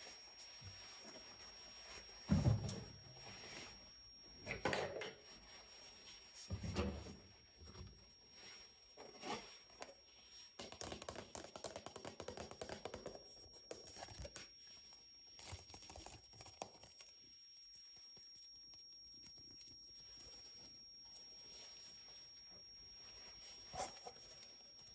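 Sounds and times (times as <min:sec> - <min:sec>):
faint rustling and crinkling: 0:00.0 - 0:24.9
small clicks and scratches: 0:09.0 - 0:22.8.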